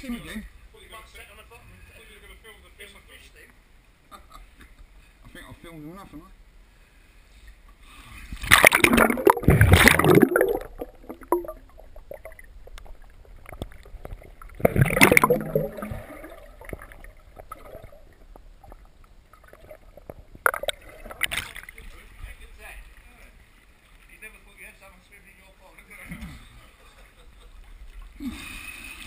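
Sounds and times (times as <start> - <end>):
pond water splashing: 8.4 - 24.4.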